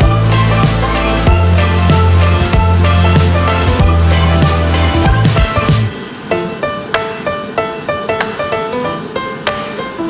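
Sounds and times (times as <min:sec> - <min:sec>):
heavy bass beat: 0:00.0 - 0:06.0
plucked melody notes: 0:00.0 - 0:10.0.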